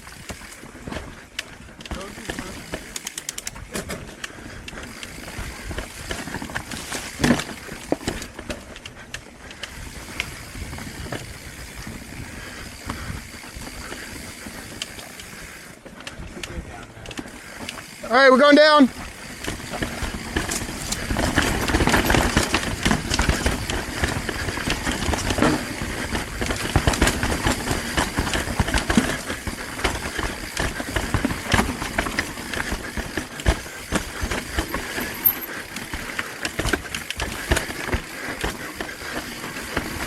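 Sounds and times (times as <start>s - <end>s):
bike tyres rattling over dirt: 0.0s - 40.0s
bike knocking over rocks: 5.2s - 8.8s, 19.3s - 40.0s.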